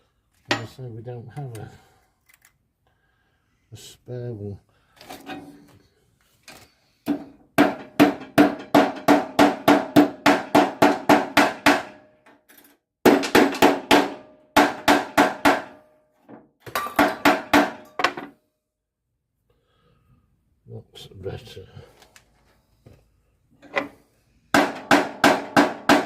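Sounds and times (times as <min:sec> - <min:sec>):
hammer striking metal: 0:07.6 - 0:12.0, 0:24.5 - 0:26.0.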